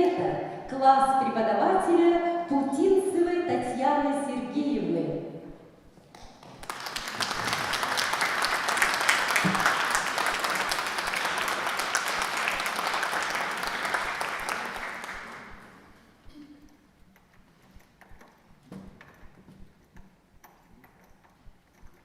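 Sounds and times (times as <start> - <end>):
audience applauding: 6.4 - 15.9.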